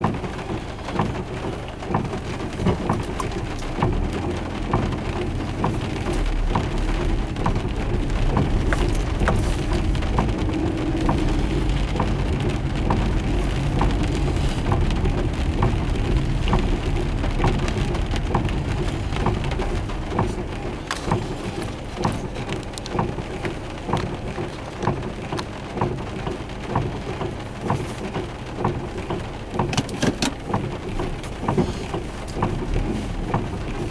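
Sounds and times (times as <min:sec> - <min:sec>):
heavy rain falling: 0:00.0 - 0:33.9
drops ticking on hard surface: 0:00.9 - 0:33.8
deep low rumble: 0:02.1 - 0:24.3.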